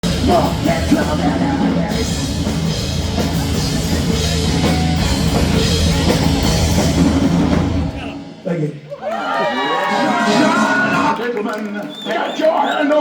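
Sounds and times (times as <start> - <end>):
bass guitar: 0.0 - 8.4
distorted electric guitar: 0.0 - 8.4
drums: 0.0 - 13.0.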